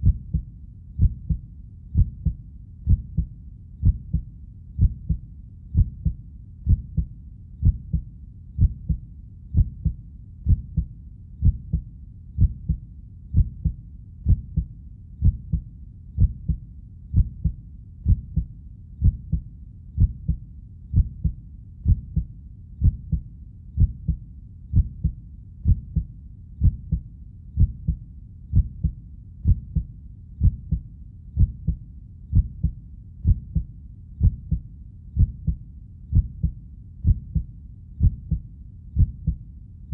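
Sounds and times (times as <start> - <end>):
heartbeat thuds: 0.0 - 19.4, 20.0 - 27.0, 27.6 - 39.4.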